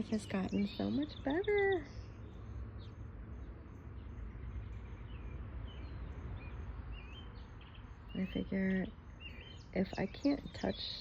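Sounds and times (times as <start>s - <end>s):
faint bird chirps: 0.0s - 11.0s
steady low rumble: 0.0s - 11.0s.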